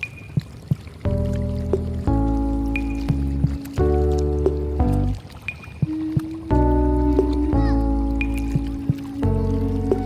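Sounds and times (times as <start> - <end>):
light clicking beats: 0.0 - 10.0
held chords over deep bass: 1.1 - 5.2, 6.5 - 10.0.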